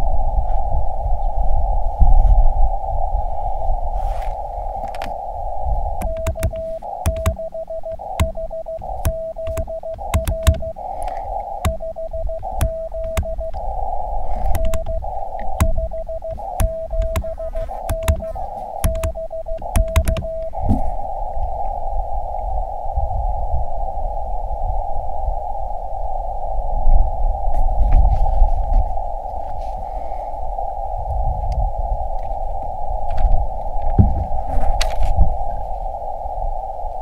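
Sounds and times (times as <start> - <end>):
receiver hiss: 3.8 - 23.0
key clicks: 6.0 - 13.7, 14.3 - 20.7
morse code beeps: 6.0 - 20.8.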